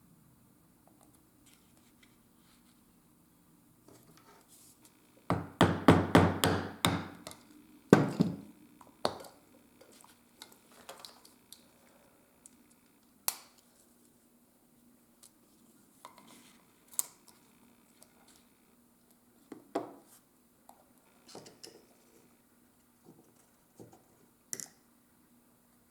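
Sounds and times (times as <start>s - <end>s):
mallet striking leather tool: 5.3s - 7.2s.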